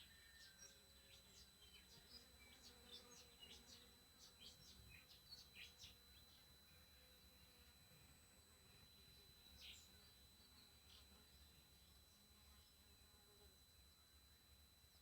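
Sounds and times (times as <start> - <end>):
bird chirps: 0.0 - 6.5, 9.5 - 12.0.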